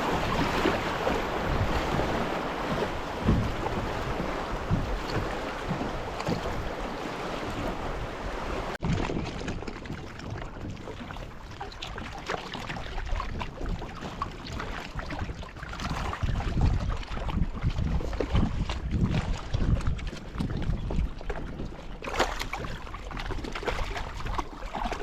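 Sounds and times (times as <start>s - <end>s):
river water rushing: 0.0s - 8.8s
water lapping with small splashes: 0.0s - 25.0s
wind buffeting microphone: 0.0s - 25.0s.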